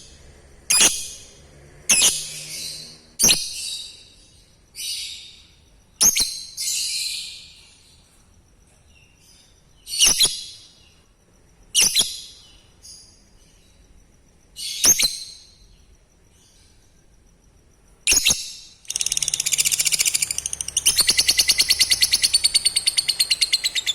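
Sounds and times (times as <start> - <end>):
lovebird screeching calls: 18.9 - 23.9.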